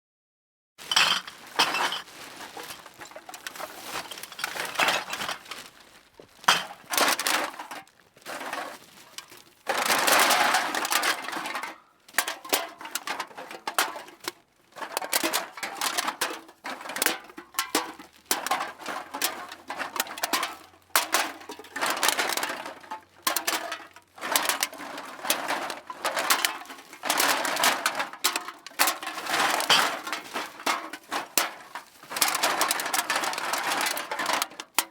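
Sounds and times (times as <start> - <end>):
cans clattering in a bag: 0.8 - 34.9.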